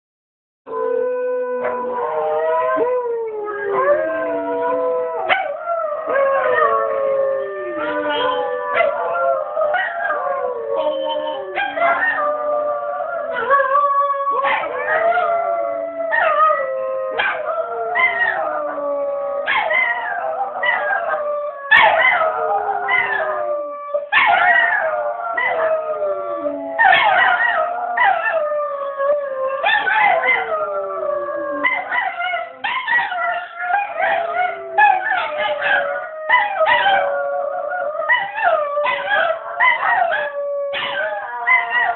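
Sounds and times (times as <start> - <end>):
dogs howling together: 0.7 - 41.9.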